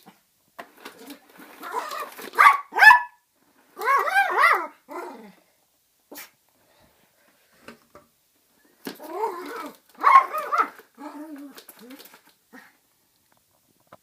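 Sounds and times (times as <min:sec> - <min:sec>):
small dog yapping: 0:01.6 - 0:03.2, 0:03.8 - 0:05.2, 0:09.0 - 0:11.4.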